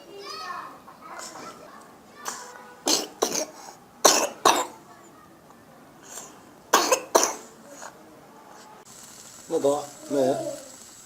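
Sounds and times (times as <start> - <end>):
child coughing: 2.2 - 5.0, 6.1 - 8.0.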